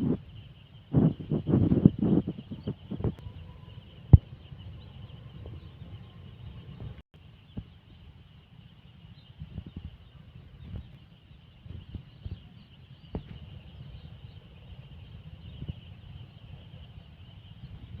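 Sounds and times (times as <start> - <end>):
chicks peeping: 0.0 - 18.0.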